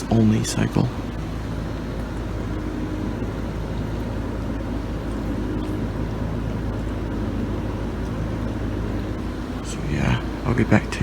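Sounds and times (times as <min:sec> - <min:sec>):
dishwasher pump humming: 0:00.0 - 0:11.0.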